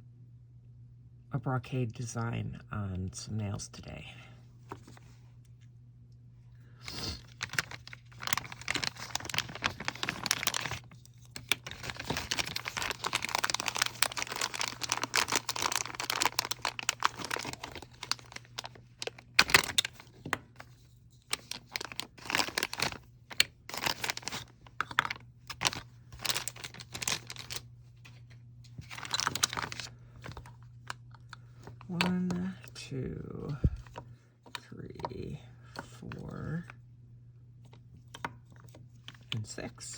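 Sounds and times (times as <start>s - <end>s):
steady low hum: 0.0s - 39.9s
packaging crinkling and tearing: 6.9s - 28.2s, 28.8s - 31.0s.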